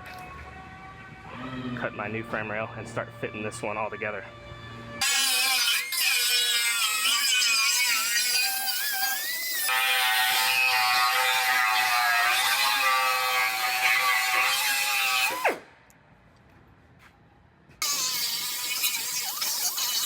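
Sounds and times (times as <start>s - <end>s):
cut-off tool whining through steel: 5.0s - 15.6s, 17.8s - 20.0s.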